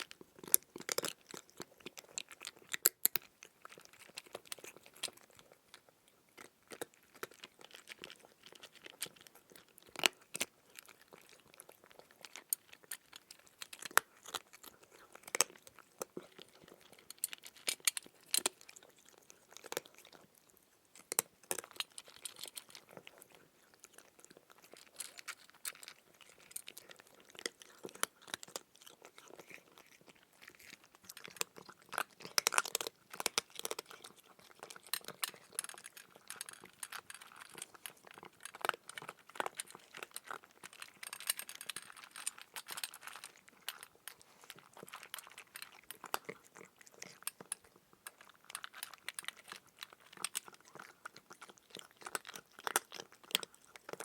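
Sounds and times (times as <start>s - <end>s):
cat chewing clicks: 0.0s - 54.0s.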